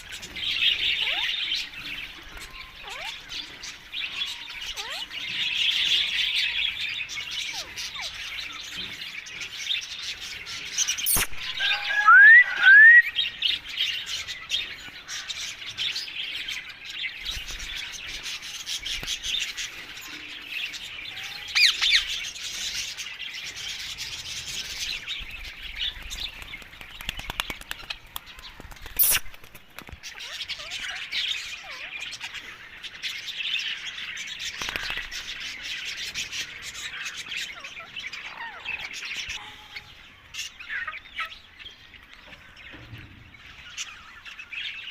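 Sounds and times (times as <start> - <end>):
parakeets chirping and squawking: 0.0 - 29.3, 29.9 - 44.8
loud rising whistles: 11.2 - 13.2.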